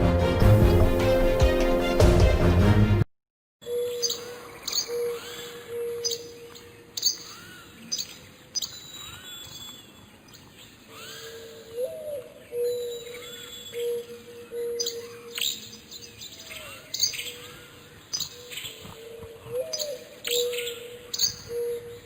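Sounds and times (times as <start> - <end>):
birds chirping: 3.6 - 22.0.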